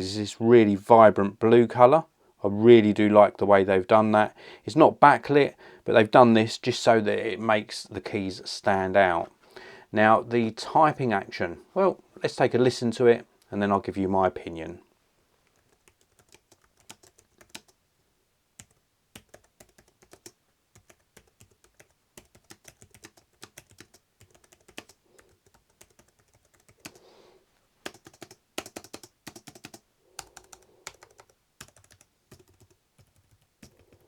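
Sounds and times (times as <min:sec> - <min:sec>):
keyboard typing clicks: 0:18.6 - 0:27.0, 0:27.8 - 0:34.0.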